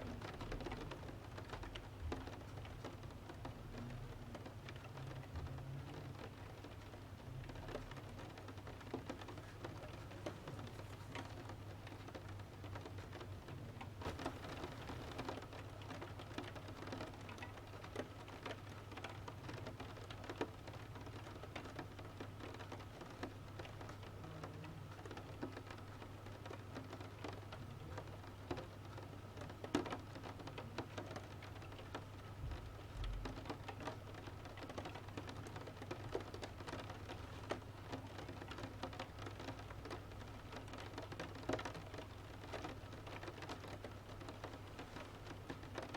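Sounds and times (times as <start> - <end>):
rain pattering on a window: 0.0 - 45.9
wood fire crackling: 14.0 - 15.2.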